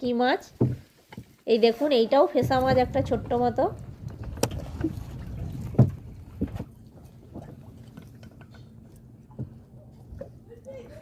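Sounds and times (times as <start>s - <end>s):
low steady rumble: 2.2s - 11.0s
water dripping and splashing: 2.4s - 10.8s.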